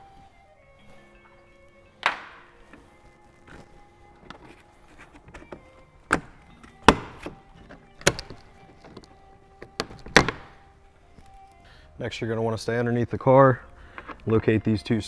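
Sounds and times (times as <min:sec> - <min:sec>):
plastic cover clacking and knocking: 0:03.5 - 0:10.6.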